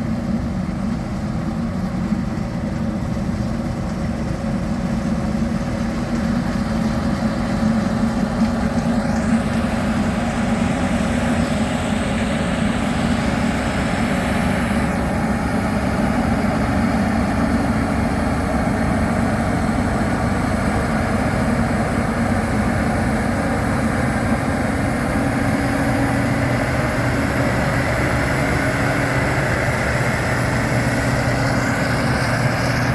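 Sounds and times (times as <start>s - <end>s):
combine harvester engine droning: 0.0s - 32.9s.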